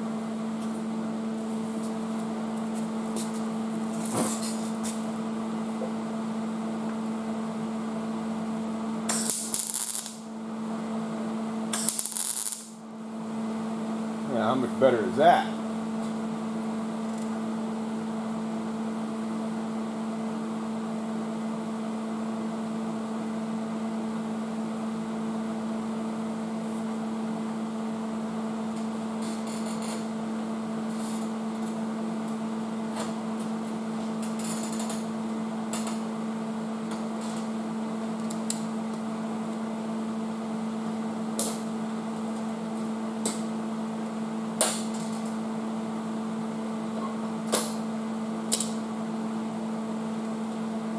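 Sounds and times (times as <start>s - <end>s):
machine electrical hum: 0.0s - 50.9s.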